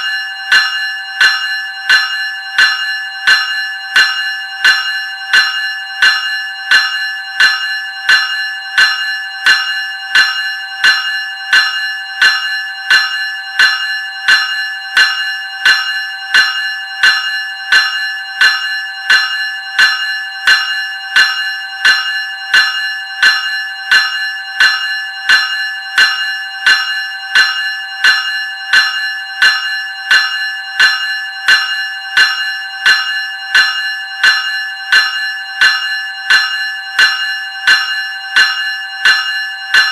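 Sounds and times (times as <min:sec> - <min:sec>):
electric bell ringing: 0:00.0 - 0:39.9.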